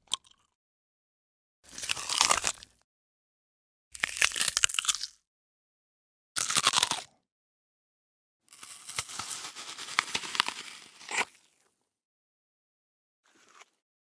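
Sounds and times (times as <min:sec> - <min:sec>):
person crunching crisp food: 0:01.7 - 0:02.8, 0:03.9 - 0:05.2, 0:06.4 - 0:07.2, 0:08.5 - 0:11.7, 0:13.3 - 0:13.8.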